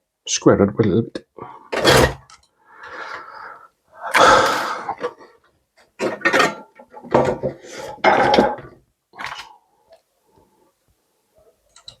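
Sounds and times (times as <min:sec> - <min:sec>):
plastic and metal parts clattering: 0:01.7 - 0:02.5, 0:05.8 - 0:09.5.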